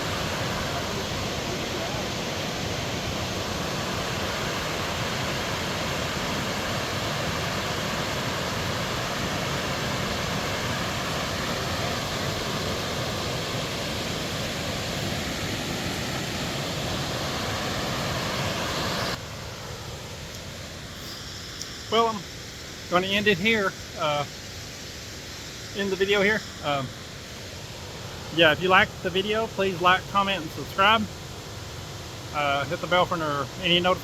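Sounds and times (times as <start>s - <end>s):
waterfall rushing: 0.0s - 34.0s.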